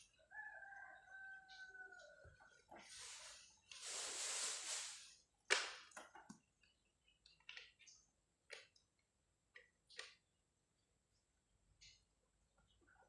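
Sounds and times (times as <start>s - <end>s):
hissing rustle: 2.8s - 5.2s.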